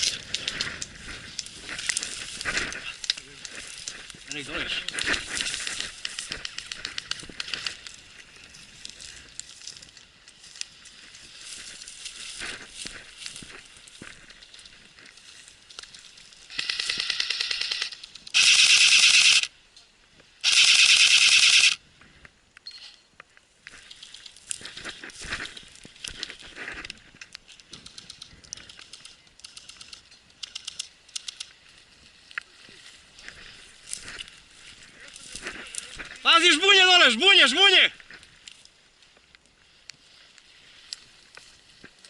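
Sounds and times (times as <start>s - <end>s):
faint clicks and pops: 0.0s - 10.7s, 22.2s - 31.6s
airsoft guns firing bursts: 16.5s - 19.5s, 20.4s - 21.8s.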